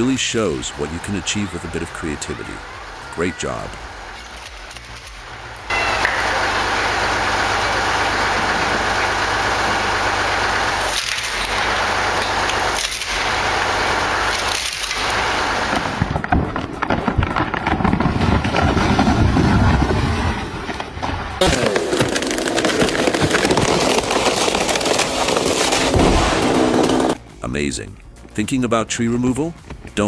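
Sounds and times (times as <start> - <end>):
wood-processing machine running: 0.0 - 27.2
wood cracking and splintering: 5.7 - 27.2.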